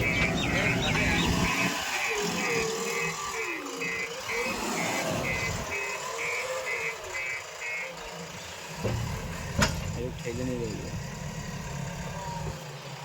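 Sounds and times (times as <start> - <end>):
reversing alarm beeping: 0.0 - 8.4
machine engine running: 0.0 - 13.0.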